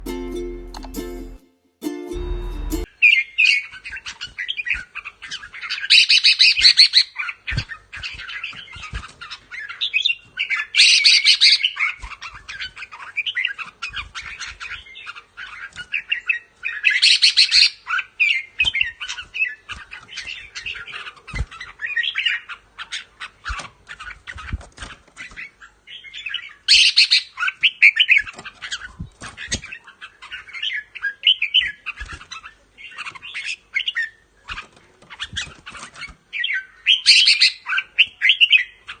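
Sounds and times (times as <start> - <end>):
bird singing bright song: 35.2 - 39.0.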